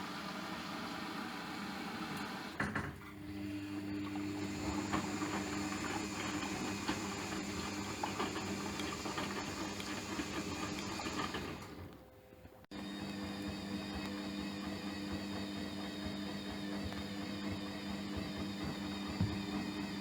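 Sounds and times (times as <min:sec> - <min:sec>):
washing machine hiss: 0:00.0 - 0:02.6, 0:03.5 - 0:11.6
washing machine motor hum: 0:00.0 - 0:12.1, 0:12.7 - 0:20.0.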